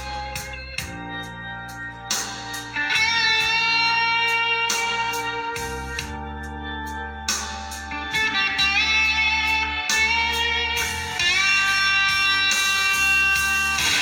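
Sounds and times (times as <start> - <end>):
electric guitar bending notes: 0.0 - 14.0
strong bass line: 0.0 - 14.0.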